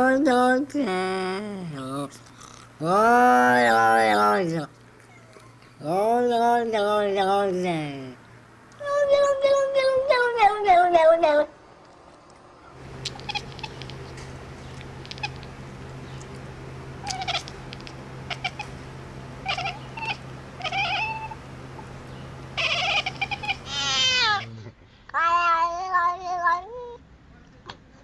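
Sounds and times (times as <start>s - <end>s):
cat meowing and yowling: 13.1s - 13.9s, 22.6s - 24.5s.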